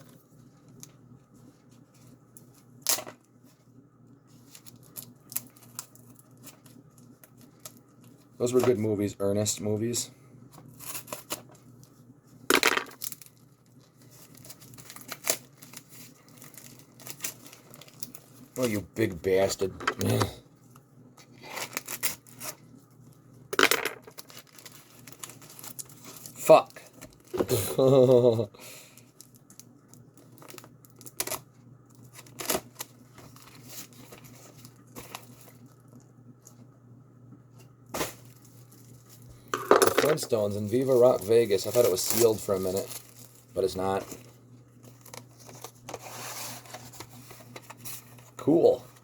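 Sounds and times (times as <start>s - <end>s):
packaging crinkling and rustling: 0.0s - 8.9s, 10.6s - 12.0s, 12.8s - 23.2s, 24.0s - 27.8s, 29.0s - 36.7s, 37.5s - 49.0s
low steady hum: 0.0s - 49.0s
packaging ripping: 13.0s - 18.2s, 21.4s - 22.6s, 24.0s - 26.4s, 32.0s - 35.7s.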